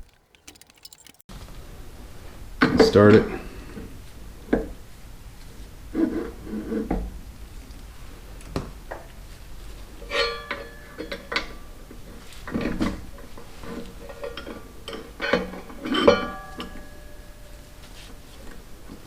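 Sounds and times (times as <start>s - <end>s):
metal tools clinking: 0.0s - 1.3s.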